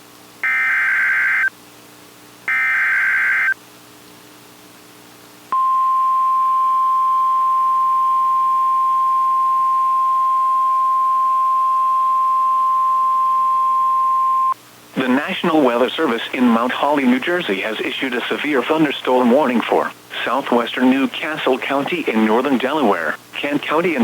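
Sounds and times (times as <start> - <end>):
bursts of high electronic tones: 0.4 - 1.5, 2.5 - 3.6
steady single-pitched alarm tone: 0.4 - 1.5, 2.5 - 3.6.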